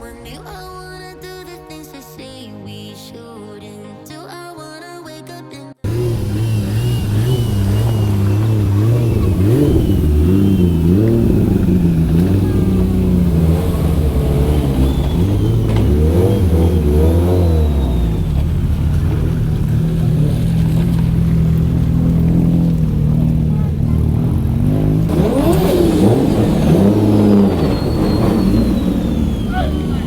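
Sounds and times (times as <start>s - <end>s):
car engine revving: 5.8s - 30.0s.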